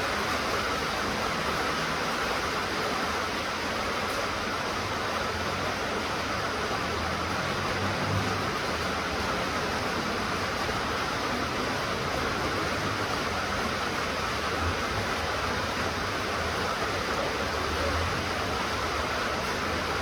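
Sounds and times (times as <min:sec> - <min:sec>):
rain falling: 0:00.0 - 0:20.0.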